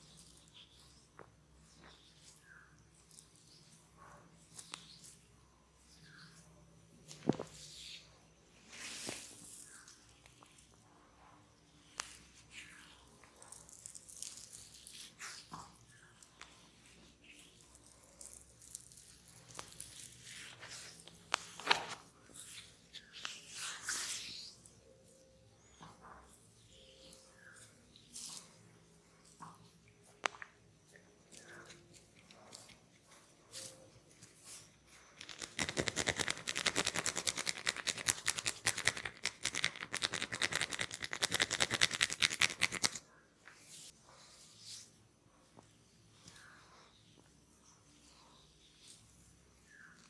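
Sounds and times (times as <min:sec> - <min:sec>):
hands rubbing hair: 0:08.6 - 0:10.6, 0:31.4 - 0:44.9.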